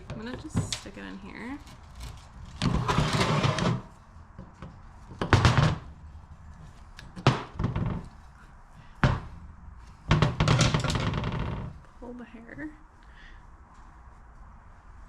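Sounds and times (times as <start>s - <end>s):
metal parts knocking and scraping: 1.7s - 5.9s, 10.1s - 11.1s.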